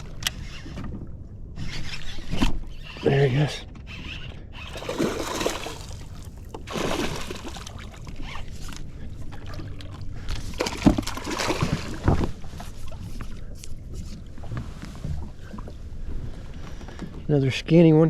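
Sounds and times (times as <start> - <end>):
fish handling noise: 3.8 - 17.1
water splashing: 4.7 - 8.5, 9.3 - 12.9.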